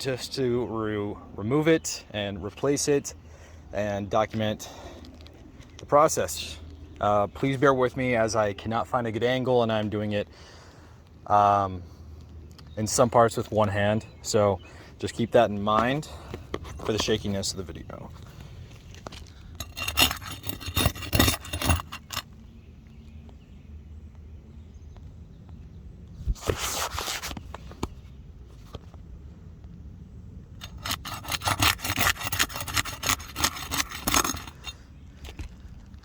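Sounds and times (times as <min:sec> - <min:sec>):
scraping on roof shingles: 0:18.8 - 0:22.3, 0:30.6 - 0:35.7.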